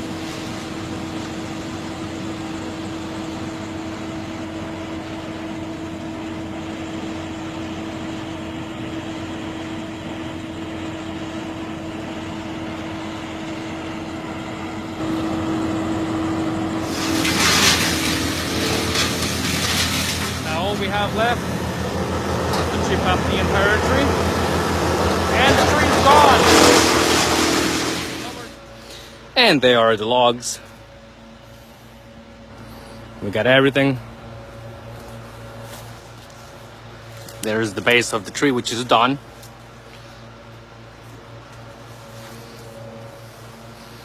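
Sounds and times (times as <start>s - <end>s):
engine humming steadily: 0.0s - 44.0s
harsh rush of noise: 16.8s - 28.6s.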